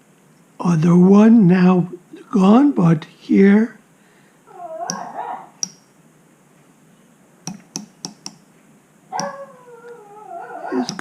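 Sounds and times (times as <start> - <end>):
quiet voice-like sound: 10.4 - 11.0.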